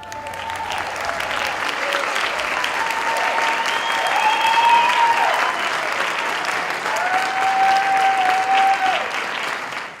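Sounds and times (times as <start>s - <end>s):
audience applauding: 0.0s - 10.0s
long whistle: 3.5s - 5.7s.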